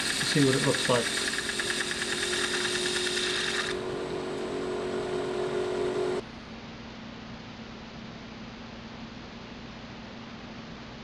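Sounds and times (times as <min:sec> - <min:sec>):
lathe gouge cutting wood: 0:00.0 - 0:06.2
wood lathe humming: 0:00.0 - 0:06.2.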